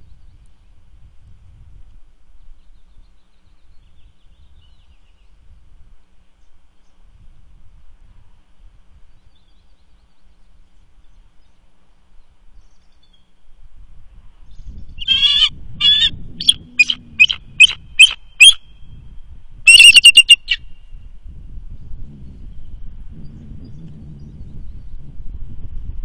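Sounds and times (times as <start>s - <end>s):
bird calling: 15.0s - 18.8s, 19.7s - 20.8s.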